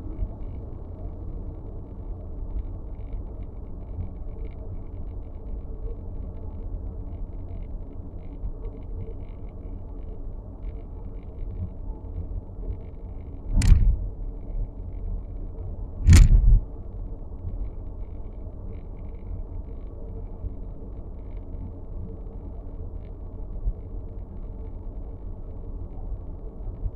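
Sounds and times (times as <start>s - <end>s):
faint light ticks: 0.2s - 16.2s, 16.9s - 26.9s
low road rumble: 13.4s - 14.4s, 16.0s - 16.7s
loud thumps: 13.5s - 14.1s, 16.0s - 16.6s.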